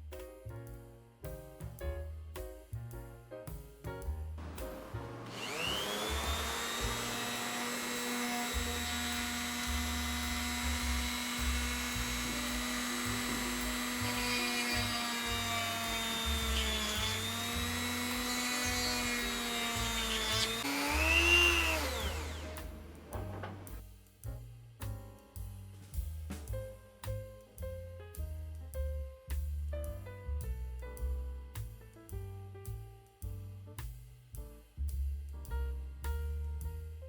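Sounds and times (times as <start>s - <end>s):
rotary tool motor whine: 5.2s - 23.7s
background music with beat: 22.6s - 36.9s.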